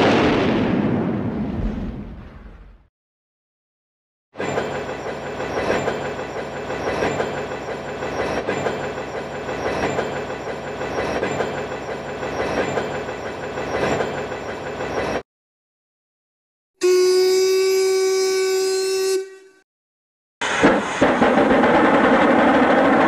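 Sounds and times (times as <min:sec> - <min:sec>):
train running along track: 0:04.4 - 0:15.2, 0:20.4 - 0:23.0.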